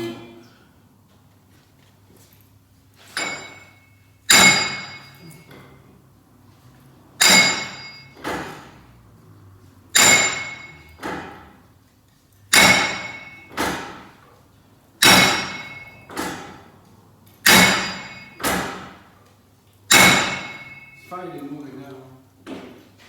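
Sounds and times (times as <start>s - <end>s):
hammer striking steel: 3.2s - 5.2s, 7.2s - 8.5s, 10.0s - 11.4s, 12.5s - 14.1s, 15.0s - 16.4s, 17.4s - 19.0s, 19.9s - 21.1s.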